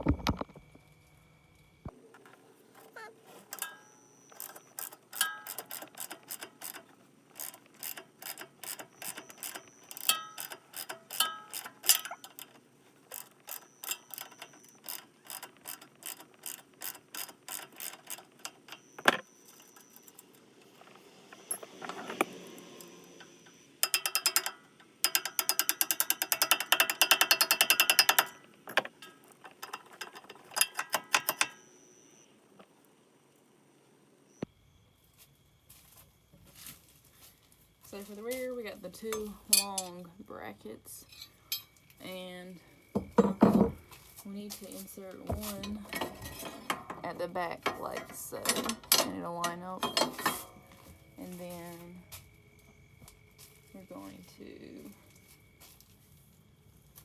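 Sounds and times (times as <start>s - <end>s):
socket ratchet clicking: 3.4s - 32.2s.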